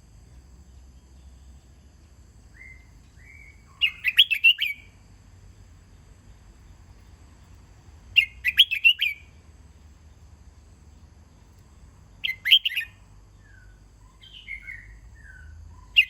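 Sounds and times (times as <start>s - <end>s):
bird singing warbled phrases: 2.5s - 5.0s, 8.1s - 9.4s, 11.3s - 16.0s.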